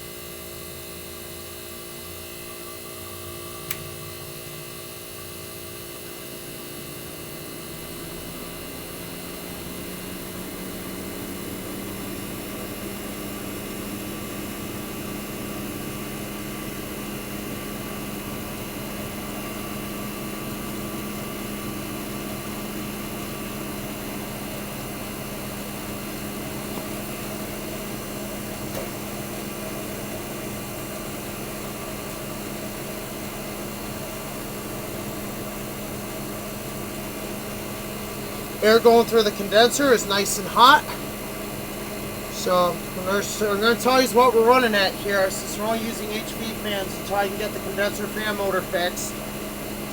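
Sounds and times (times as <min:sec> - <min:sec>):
air conditioner compressor hum: 0:00.0 - 0:49.9
fan air rushing: 0:18.9 - 0:49.9.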